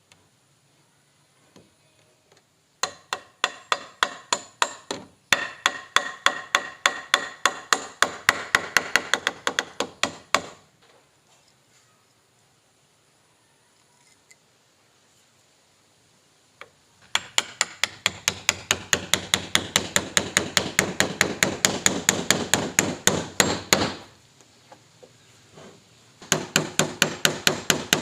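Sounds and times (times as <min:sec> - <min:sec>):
hammer striking wood: 0:02.8 - 0:10.6, 0:17.0 - 0:24.1, 0:26.2 - 0:28.0.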